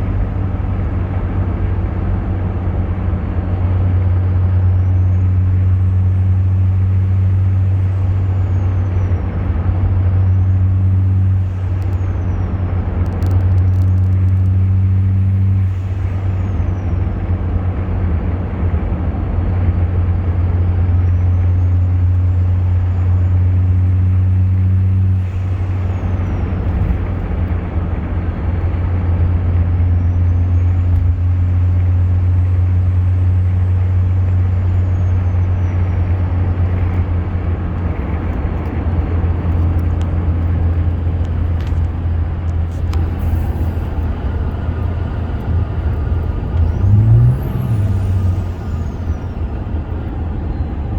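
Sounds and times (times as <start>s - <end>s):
deep diesel engine drone: 0.0s - 50.9s
turbocharger whistling: 20.3s - 50.9s.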